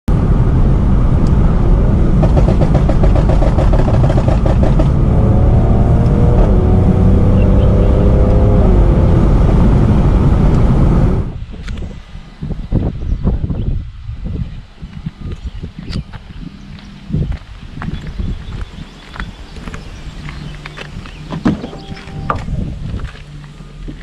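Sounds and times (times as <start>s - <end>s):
car engine accelerating hard: 0.2s - 11.4s.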